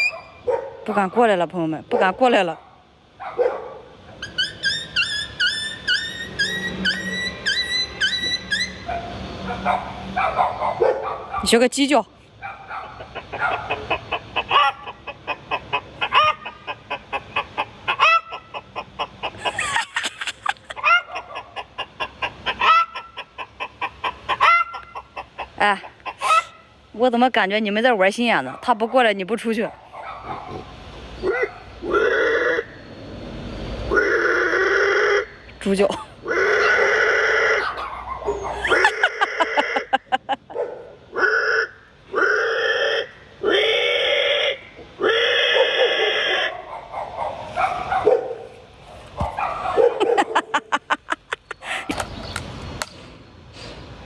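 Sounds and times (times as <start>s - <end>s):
pig squealing: 0.0s - 0.3s, 4.2s - 9.0s, 13.0s - 19.6s, 26.1s - 26.6s, 30.3s - 32.8s, 33.9s - 35.4s, 36.2s - 40.0s, 41.1s - 47.3s
person imitating hen clucking: 13.0s - 26.6s, 33.9s - 37.8s, 38.6s - 40.5s.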